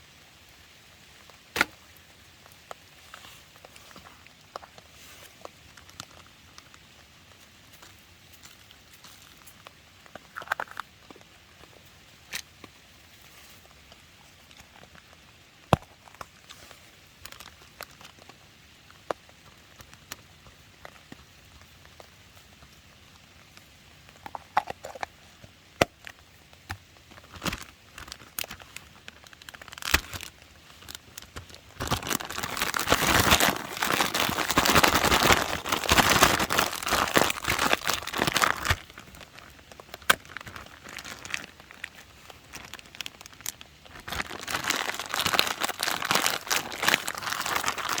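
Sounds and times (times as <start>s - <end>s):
packaging crinkling: 27.1s - 48.0s.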